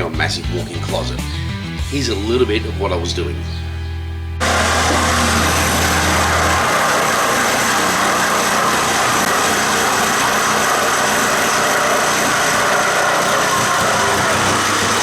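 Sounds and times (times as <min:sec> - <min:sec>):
power tool whining: 0:04.4 - 0:15.0.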